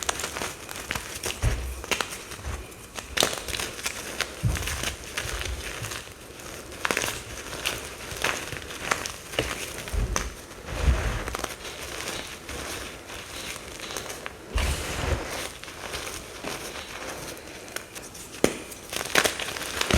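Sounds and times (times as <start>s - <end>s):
powder bombs crunching: 0.0s - 19.9s
soft low thumps: 1.4s - 3.0s, 9.9s - 11.4s, 14.6s - 15.3s.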